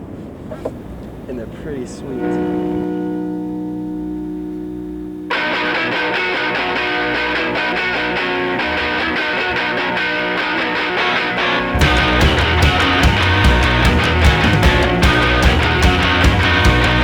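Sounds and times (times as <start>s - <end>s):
rock band with electric guitar: 5.3s - 17.0s
hard drum hits: 11.7s - 17.0s.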